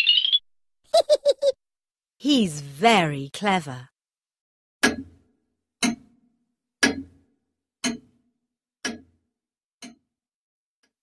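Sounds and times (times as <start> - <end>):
clock ticking: 4.8 - 5.2, 5.8 - 6.2, 6.8 - 7.2, 7.8 - 8.2, 8.8 - 9.1.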